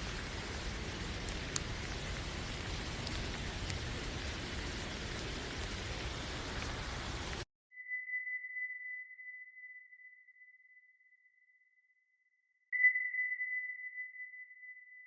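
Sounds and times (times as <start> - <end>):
faint raindrop ticks: 0.0 - 7.4
rain hissing: 0.0 - 7.5.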